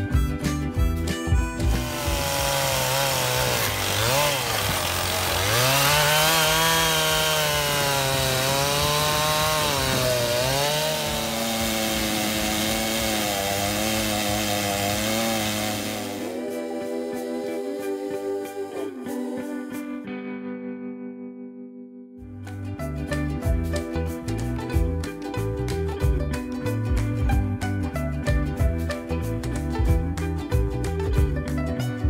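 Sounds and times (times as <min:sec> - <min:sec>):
music: 0:00.0 - 0:32.0
saw rasping through log: 0:01.6 - 0:16.6.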